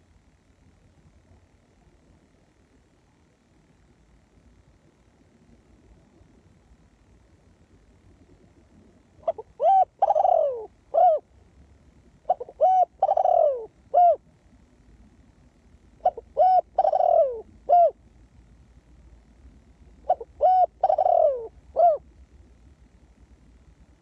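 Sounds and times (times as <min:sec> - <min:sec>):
dove cooing: 0:09.2 - 0:11.3, 0:12.2 - 0:14.2, 0:16.0 - 0:18.0, 0:20.0 - 0:22.1.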